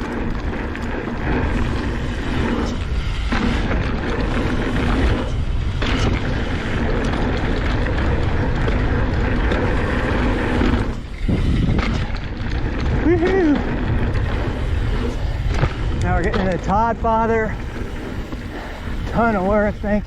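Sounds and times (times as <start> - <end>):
tyres rumbling over dirt: 0.0 - 20.0
wind rushing on camera: 0.0 - 20.0.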